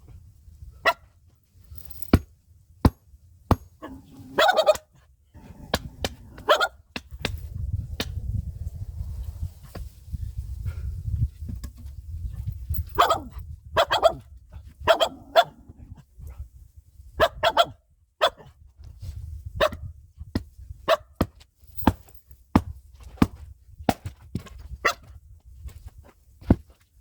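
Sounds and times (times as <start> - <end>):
dog barking sharply: 3.8 - 4.9, 6.4 - 6.8, 13.0 - 14.2, 14.9 - 15.6, 17.2 - 18.5.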